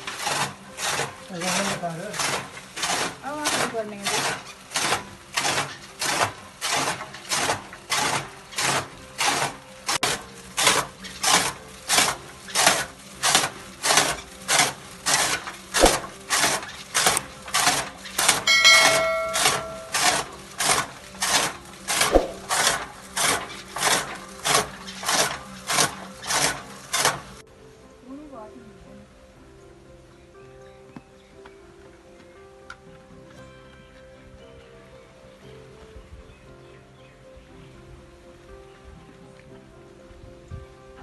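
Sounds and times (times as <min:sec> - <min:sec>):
blades chopping fodder: 0:15.1 - 0:20.2
brief ringing tone: 0:18.2 - 0:20.2.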